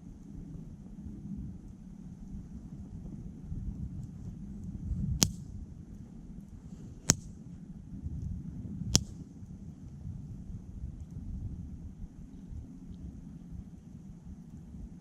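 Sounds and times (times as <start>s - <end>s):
firewood popping: 5.1s - 5.5s, 6.5s - 7.3s, 8.9s - 9.2s.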